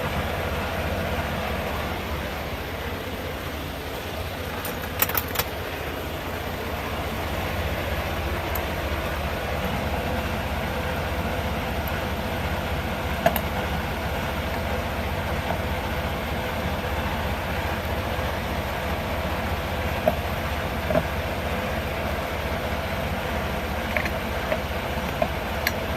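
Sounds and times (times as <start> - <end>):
truck engine idling: 0.0 - 25.9
sharp metallic clicks: 4.5 - 5.6.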